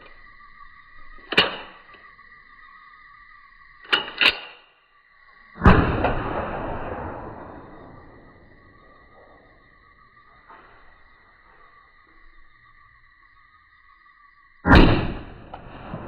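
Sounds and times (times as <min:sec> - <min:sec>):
sharp cracks: 0:01.2 - 0:02.0, 0:05.6 - 0:09.6, 0:14.7 - 0:16.0
heavy rumbling boom: 0:05.6 - 0:09.4.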